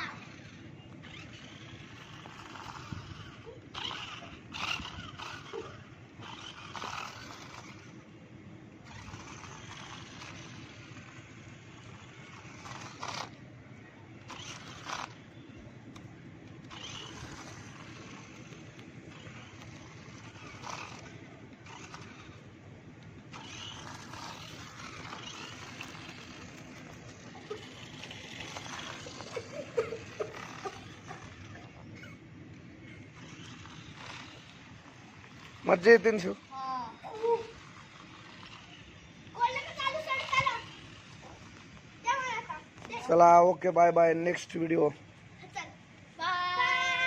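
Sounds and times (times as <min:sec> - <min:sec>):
toy car electric motor: 0:00.0 - 0:08.2, 0:08.8 - 0:13.4, 0:14.2 - 0:43.4, 0:44.2 - 0:47.0.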